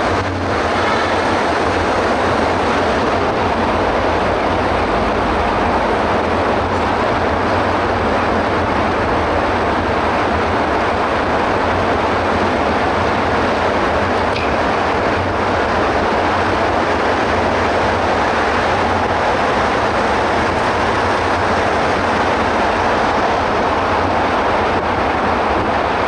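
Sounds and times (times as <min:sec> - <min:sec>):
wind rushing over microphone: 0:00.0 - 0:26.0.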